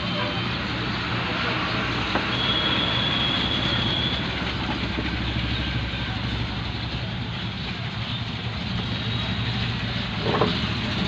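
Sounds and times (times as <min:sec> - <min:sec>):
high whistling tone: 0:02.1 - 0:04.4.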